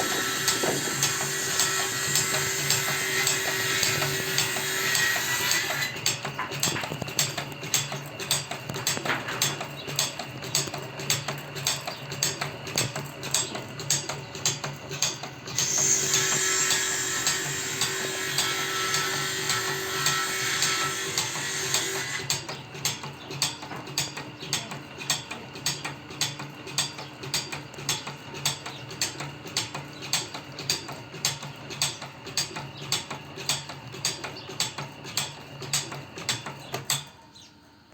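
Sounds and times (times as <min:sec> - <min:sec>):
motor hum: 0:00.0 - 0:24.9.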